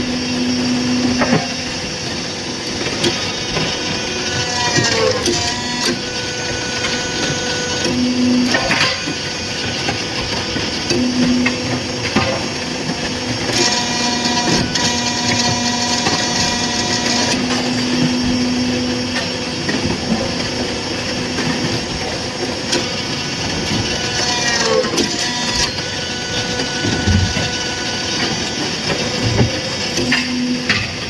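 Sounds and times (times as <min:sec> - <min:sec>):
brick-making machine droning: 0:00.0 - 0:31.0
machine knocks and clatter: 0:28.2 - 0:31.0.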